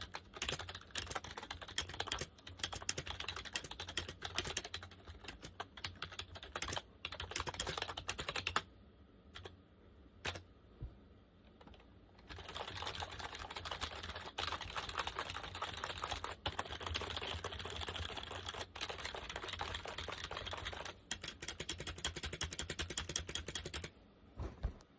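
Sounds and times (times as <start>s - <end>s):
keyboard typing: 0.0s - 8.6s, 10.2s - 10.4s, 11.6s - 23.9s.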